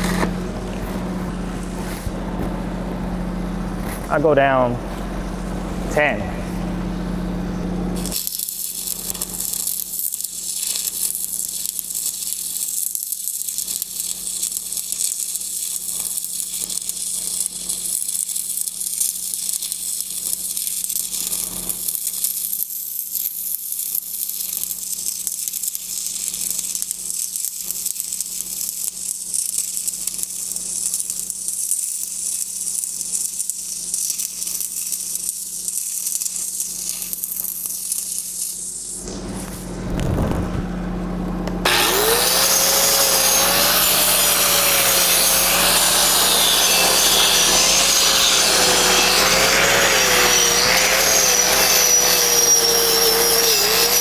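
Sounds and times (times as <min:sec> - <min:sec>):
low machine hum: 0:00.0 - 0:08.2, 0:39.0 - 0:49.2
welding arc crackling and hissing: 0:07.6 - 0:40.6, 0:41.6 - 0:54.0.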